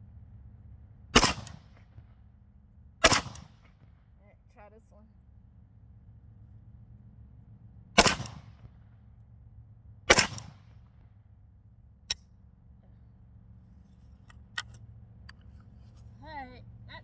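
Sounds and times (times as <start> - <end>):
rifle shots echoing: 1.2 - 1.7, 3.0 - 3.5, 8.0 - 8.5, 10.1 - 10.6.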